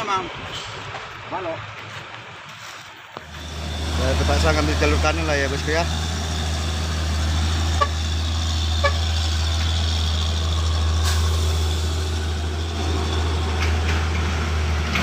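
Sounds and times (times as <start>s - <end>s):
truck diesel engine running: 3.2s - 15.0s.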